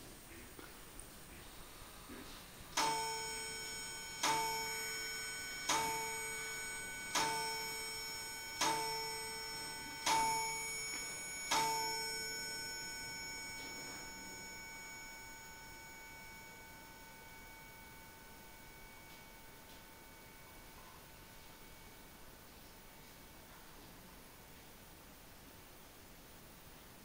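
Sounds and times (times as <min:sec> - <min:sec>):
metallic bell chime: 0:02.8 - 0:22.1.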